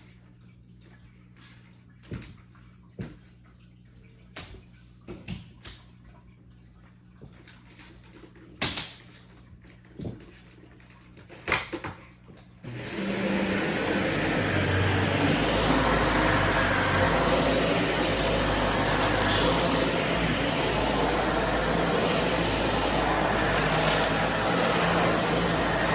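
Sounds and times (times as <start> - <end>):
vacuum cleaner running: 12.6 - 25.9.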